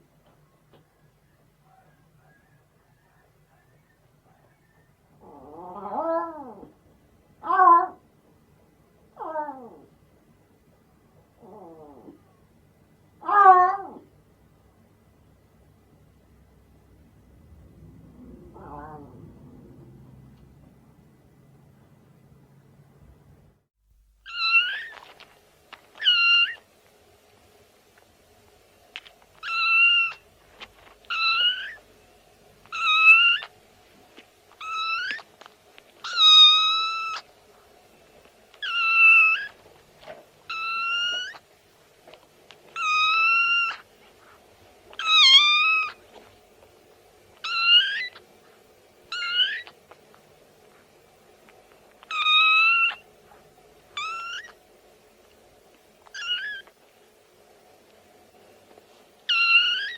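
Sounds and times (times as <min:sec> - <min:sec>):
cat meowing: 0:07.4 - 0:08.0, 0:13.2 - 0:14.1, 0:18.4 - 0:19.2, 0:24.3 - 0:25.2, 0:26.0 - 0:26.6, 0:29.4 - 0:30.2, 0:31.1 - 0:31.8, 0:32.7 - 0:33.5, 0:34.6 - 0:35.3, 0:36.0 - 0:37.3, 0:38.6 - 0:39.6, 0:40.5 - 0:41.4, 0:42.7 - 0:43.9, 0:44.9 - 0:46.0, 0:47.4 - 0:48.2, 0:49.1 - 0:49.8, 0:52.0 - 0:53.0, 0:53.9 - 0:54.6, 0:56.0 - 0:56.8, 0:59.3 - 0:59.9.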